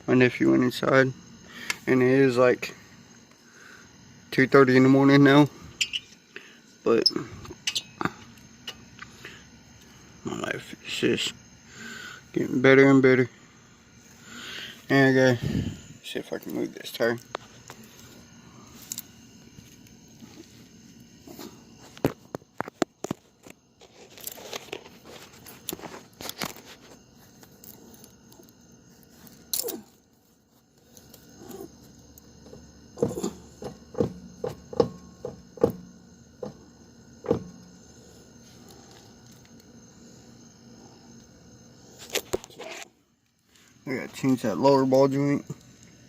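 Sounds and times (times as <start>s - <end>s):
sharp clicks and knocks: 32.4s - 37.6s.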